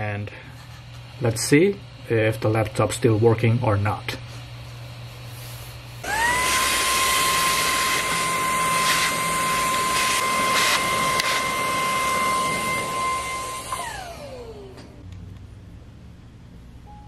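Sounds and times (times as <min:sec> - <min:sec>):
small electric motor whining: 0:06.0 - 0:15.0.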